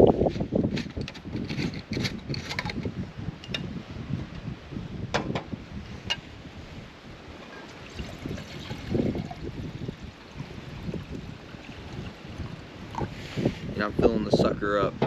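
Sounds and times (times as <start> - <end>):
wind rumbling on microphone: 0.0 - 15.0
water pouring into pot: 7.7 - 12.7.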